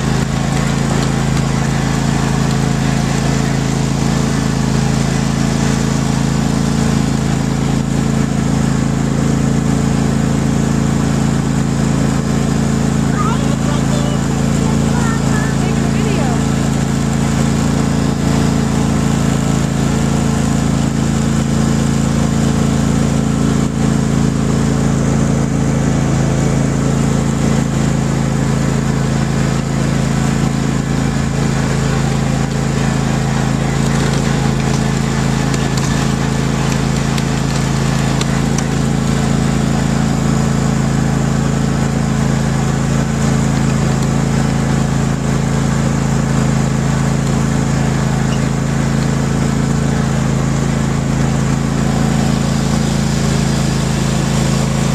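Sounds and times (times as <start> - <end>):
engine running with mechanical hum: 0.0 - 54.9.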